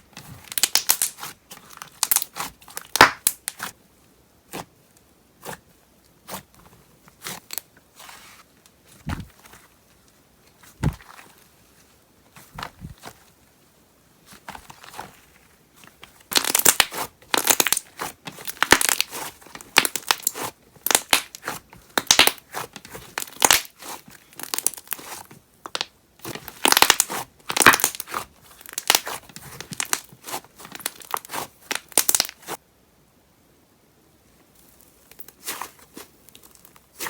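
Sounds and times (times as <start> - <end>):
slime crackling and popping: 0.4 - 3.7, 16.2 - 32.6.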